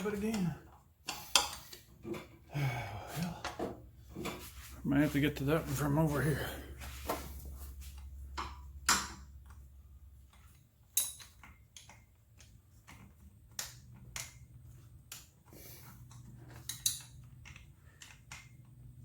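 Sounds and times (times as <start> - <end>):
hand tools clicking on metal: 10.3 - 18.9.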